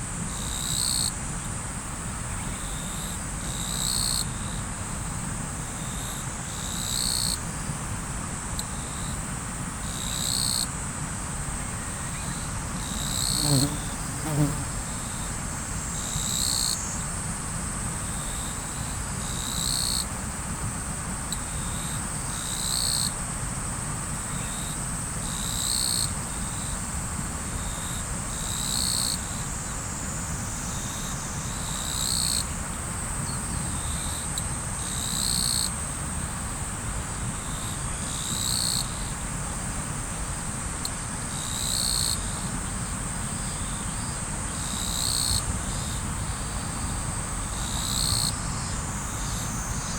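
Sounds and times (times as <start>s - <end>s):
insects trilling: 11.6s - 15.3s, 27.6s - 36.7s, 37.4s - 39.1s, 41.3s - 49.9s.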